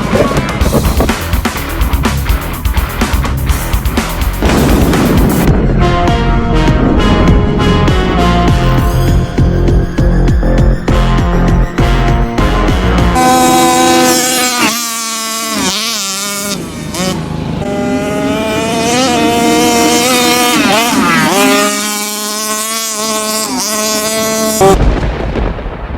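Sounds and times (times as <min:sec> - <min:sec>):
loud low burst: 0:00.6 - 0:13.7.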